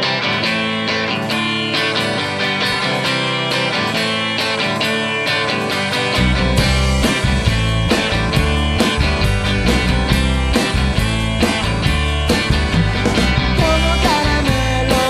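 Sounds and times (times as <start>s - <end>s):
strummed rock guitar: 0.0s - 15.0s
deep bass notes: 6.2s - 15.0s.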